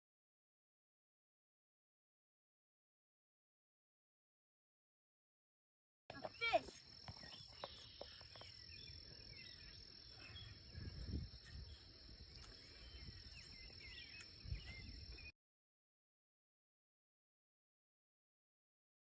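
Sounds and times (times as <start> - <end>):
crickets trilling: 6.1 - 15.3
faint bird chirps: 6.1 - 15.3
low wind rumble: 8.8 - 15.3.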